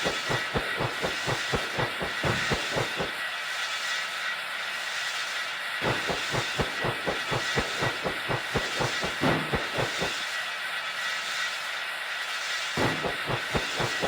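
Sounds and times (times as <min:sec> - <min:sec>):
train wheels clacking over rails: 0:00.0 - 0:03.2, 0:05.8 - 0:10.4, 0:12.8 - 0:14.0
train hiss: 0:00.0 - 0:14.0.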